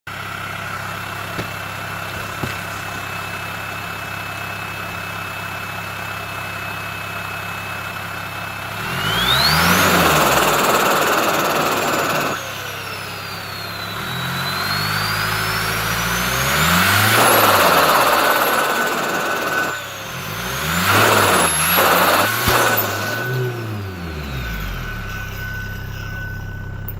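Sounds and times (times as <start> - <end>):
turbocharged engine revving: 8.6 - 26.9
high turbo whistle: 8.8 - 26.9.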